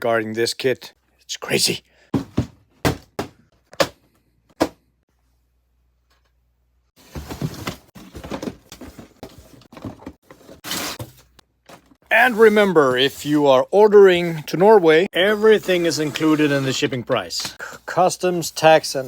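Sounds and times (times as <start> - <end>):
rustling and scraping: 7.0 - 13.4, 15.4 - 19.0.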